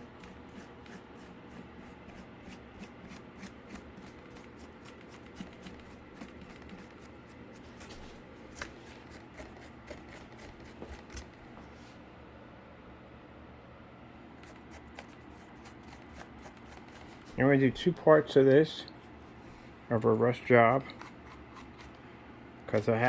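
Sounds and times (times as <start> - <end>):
paintbrush scratching cardboard: 0.0 - 11.4, 14.4 - 17.4, 20.5 - 22.0.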